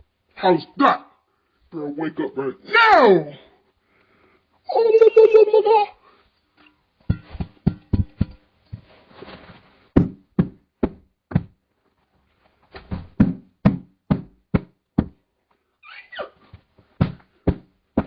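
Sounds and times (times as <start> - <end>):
dull knocks on a hard surface: 7.1 - 8.9, 10.0 - 11.6, 17.0 - 18.0.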